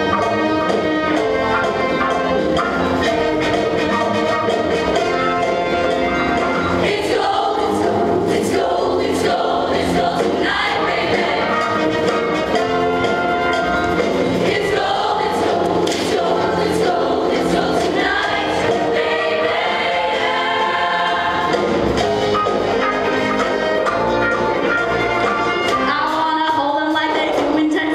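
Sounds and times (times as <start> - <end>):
live band playing: 0.0 - 27.9
choir singing in harmony: 2.9 - 24.1.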